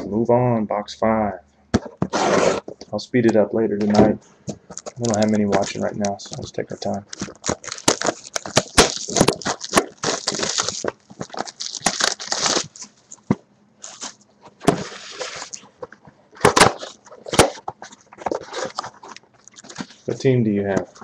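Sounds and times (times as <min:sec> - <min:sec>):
packaging ripping and crinkling: 0:04.7 - 0:15.8, 0:16.4 - 0:20.1.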